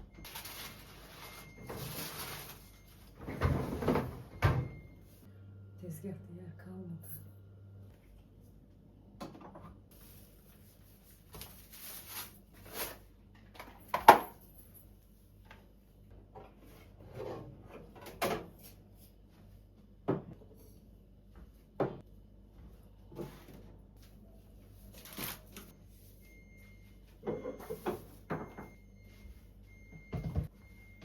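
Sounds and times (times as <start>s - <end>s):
fridge drawers and containers clattering: 0.2s - 4.8s
rustling: 0.3s - 3.1s, 10.0s - 13.0s.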